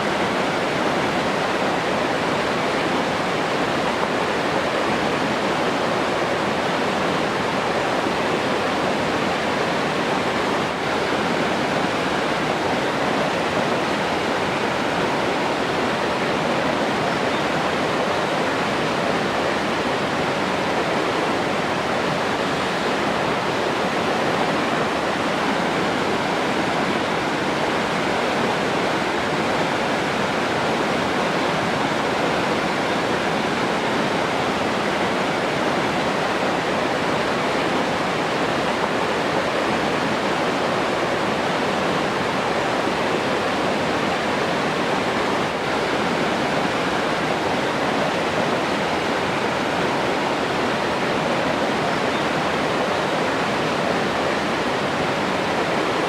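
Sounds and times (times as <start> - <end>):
flowing water rushing: 0.0 - 56.0.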